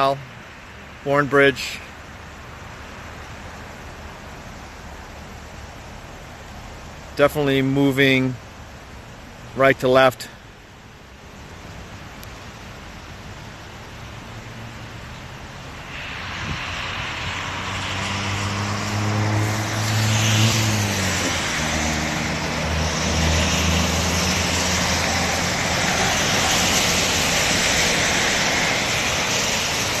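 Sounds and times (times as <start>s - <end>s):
road noise: 0.0s - 30.0s
vehicle engine hum: 10.5s - 30.0s.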